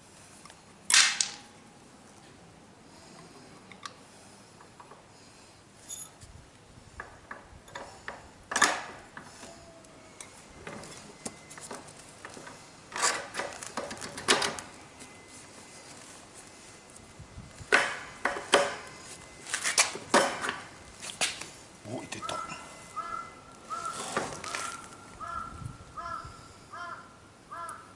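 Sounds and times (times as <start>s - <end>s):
tools clicking and knocking: 17.7s - 18.9s.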